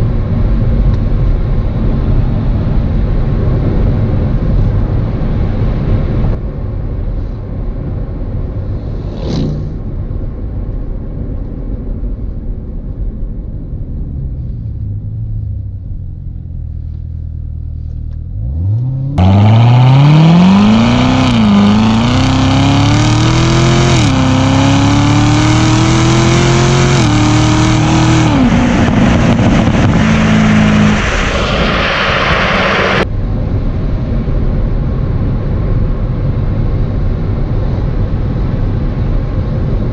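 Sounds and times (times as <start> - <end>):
car exhaust rumbling and revving: 0.0 - 39.9.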